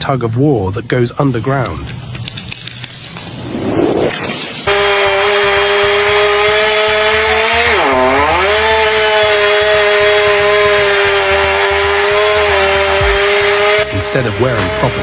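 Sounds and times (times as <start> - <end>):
chainsaw running at high revs: 4.7 - 15.0.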